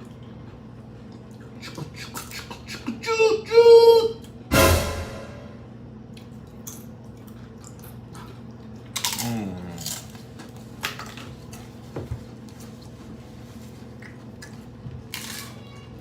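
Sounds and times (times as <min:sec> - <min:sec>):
chewing: 0:00.0 - 0:03.0, 0:06.1 - 0:15.6
low hum: 0:04.5 - 0:06.1
crunching bites of taco shells: 0:06.2 - 0:11.7, 0:14.0 - 0:15.8.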